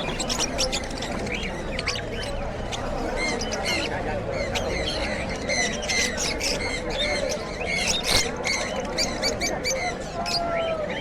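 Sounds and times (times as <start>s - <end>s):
small birds chirping: 0.0s - 3.9s.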